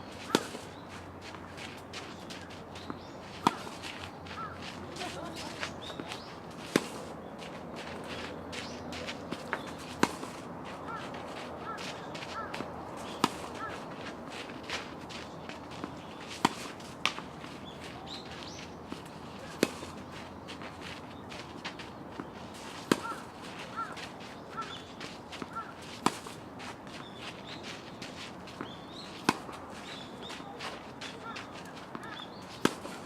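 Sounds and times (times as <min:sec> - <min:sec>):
birds chirping: 0:00.0 - 0:33.0
racket hitting tennis ball: 0:00.2 - 0:00.6, 0:03.3 - 0:04.0, 0:05.0 - 0:07.1, 0:09.0 - 0:15.2, 0:15.8 - 0:17.8, 0:18.9 - 0:20.0, 0:22.4 - 0:23.8, 0:24.6 - 0:26.4, 0:28.5 - 0:33.0.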